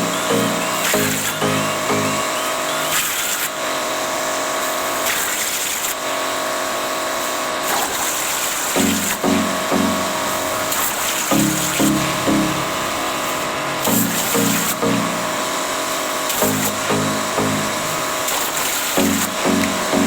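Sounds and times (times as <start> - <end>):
short low-pitched tones: 8.8 - 10.6, 11.3 - 15.6, 16.4 - 18.2.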